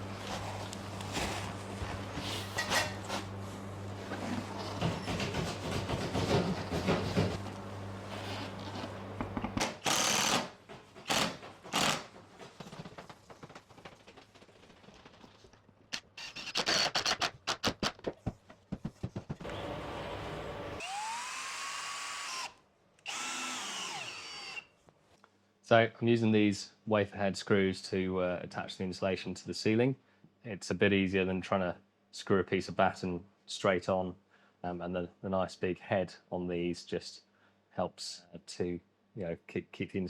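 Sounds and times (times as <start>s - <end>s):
power drill driving screws: 9.6s - 12.1s, 16.0s - 17.9s, 19.4s - 24.7s
motor whine: 19.4s - 22.5s, 23.1s - 24.6s.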